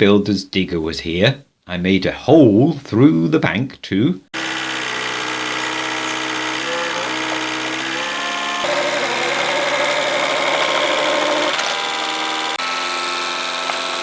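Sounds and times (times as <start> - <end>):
digger diesel engine running: 4.4 - 14.0.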